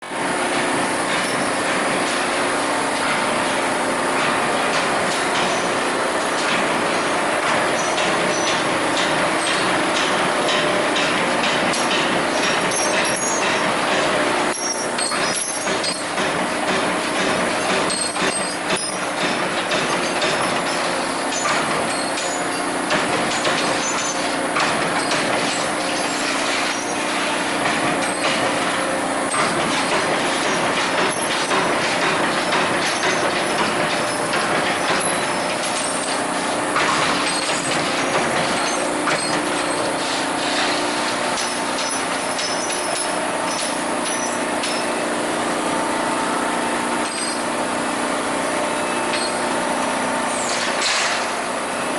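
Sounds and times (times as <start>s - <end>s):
punch press clattering: 4.2s - 45.0s.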